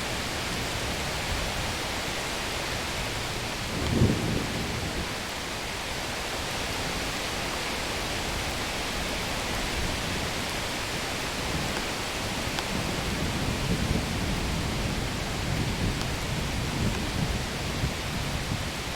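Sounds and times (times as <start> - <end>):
heavy rain hissing: 0.0 - 18.9
thunder rumbling: 3.6 - 5.1.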